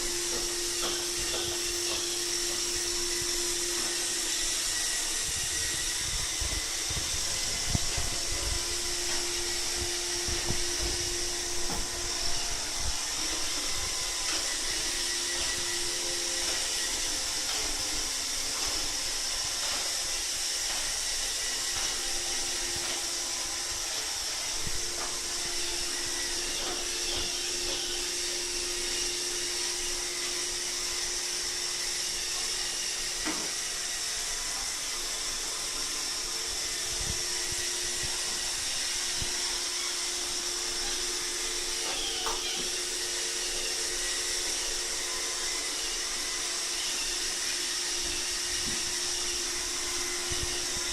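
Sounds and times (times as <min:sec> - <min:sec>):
robot vacuum running: 0:00.0 - 0:50.9.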